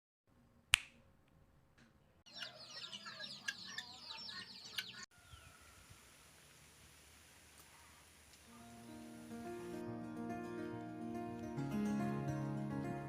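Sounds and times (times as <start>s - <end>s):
many birds chirping: 2.3s - 5.9s.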